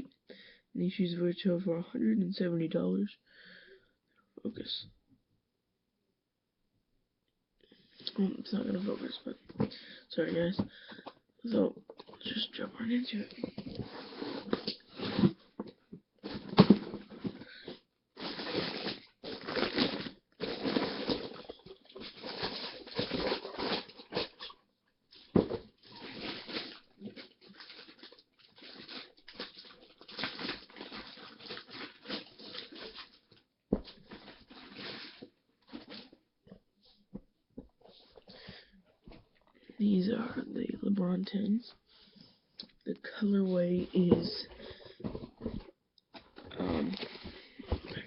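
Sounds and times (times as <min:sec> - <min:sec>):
paper and cardboard rustling: 0:13.1 - 0:24.6, 0:43.8 - 0:48.0.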